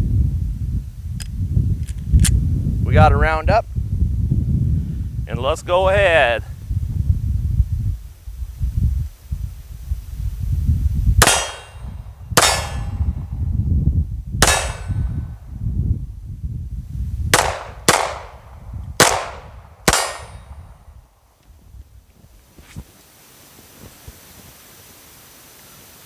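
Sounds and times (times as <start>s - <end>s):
low wind rumble: 0.0s - 22.9s
pistol shots: 11.2s - 13.1s, 14.4s - 15.2s, 17.4s - 18.4s, 19.0s - 20.5s.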